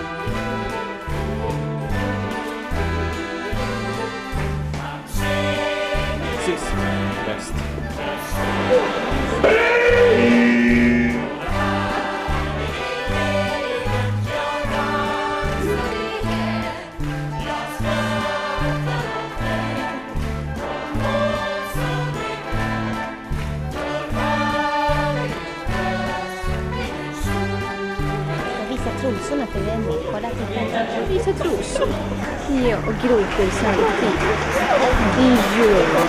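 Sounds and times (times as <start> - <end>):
voices singing: 4.8 - 23.2
band with steady bass line: 9.4 - 11.5.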